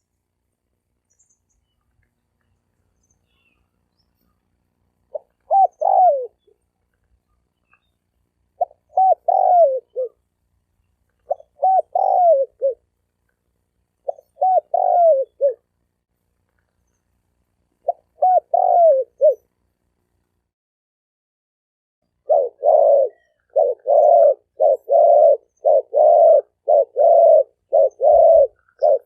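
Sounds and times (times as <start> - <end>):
dove cooing: 5.1 - 6.6, 8.6 - 10.2, 11.2 - 12.9, 14.0 - 15.7, 17.8 - 19.5, 22.2 - 29.0.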